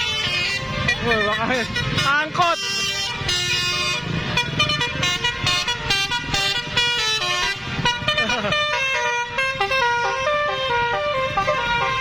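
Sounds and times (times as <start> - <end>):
musical air horn melody: 0.0 - 12.0.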